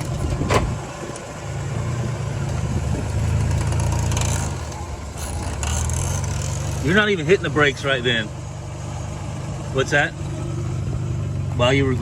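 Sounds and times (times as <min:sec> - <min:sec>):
car engine running at low speed: 0:00.0 - 0:12.0
wheel noise: 0:00.0 - 0:12.0.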